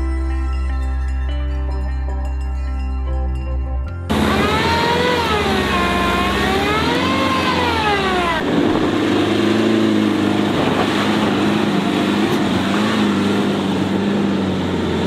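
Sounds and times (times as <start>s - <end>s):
diesel engine under load: 4.1s - 15.0s.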